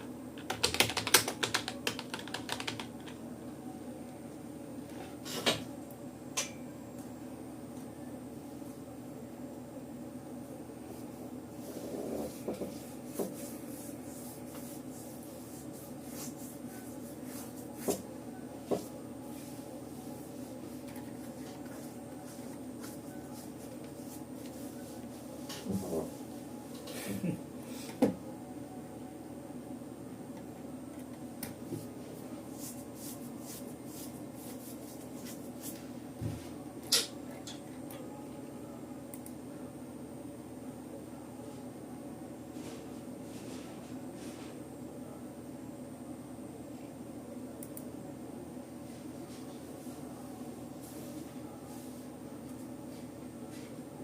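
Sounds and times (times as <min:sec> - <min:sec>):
steady low hum: 0:00.0 - 0:54.0
computer keyboard keys tapping: 0:00.4 - 0:03.2.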